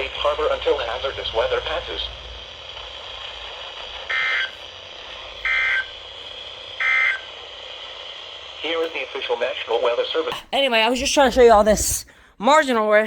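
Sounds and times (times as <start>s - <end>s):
radio hiss: 0.0s - 10.4s
digital data tone bursts: 5.4s - 6.0s.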